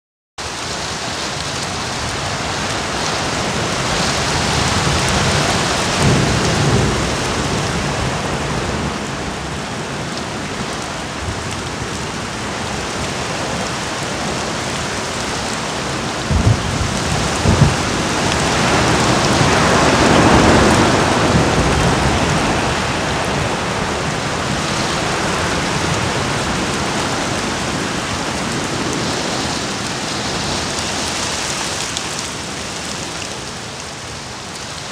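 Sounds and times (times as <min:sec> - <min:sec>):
heavy rain: 0:00.4 - 0:34.9
thunder rumbling and clapping: 0:02.6 - 0:09.4, 0:16.2 - 0:30.8.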